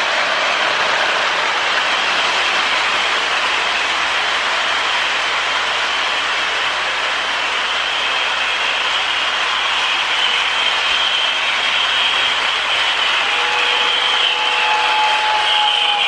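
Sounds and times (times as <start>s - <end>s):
toy train whirring: 0.0s - 16.0s
two-note train whistle: 10.0s - 16.0s.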